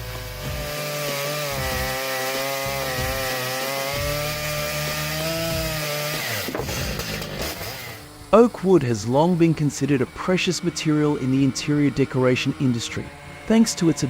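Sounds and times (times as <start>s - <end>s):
chainsaw cutting wood: 0.0s - 8.6s.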